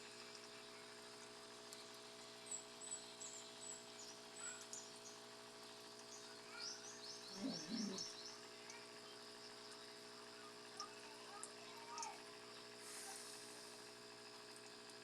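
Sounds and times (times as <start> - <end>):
steady hum: 0.0 - 15.0
birds chirping: 6.1 - 8.4.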